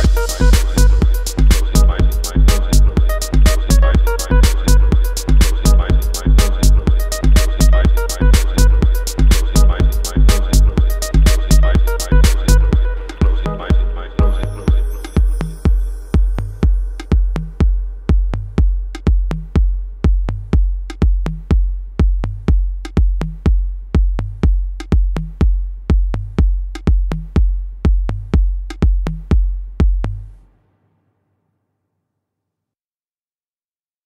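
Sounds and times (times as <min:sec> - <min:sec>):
synth pad: 0:00.0 - 0:17.2
electronic bass drum thumping: 0:00.0 - 0:30.4.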